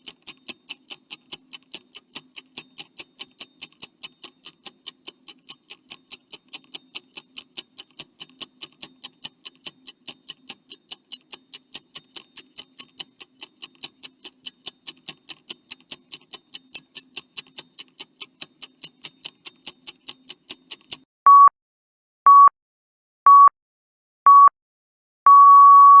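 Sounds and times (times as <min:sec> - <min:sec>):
clock ticking: 0:00.0 - 0:21.0
short electronic beeps: 0:21.3 - 0:21.5, 0:22.3 - 0:22.5, 0:23.3 - 0:23.5, 0:24.3 - 0:24.5, 0:25.3 - 0:26.0
long electronic beep: 0:25.3 - 0:26.0.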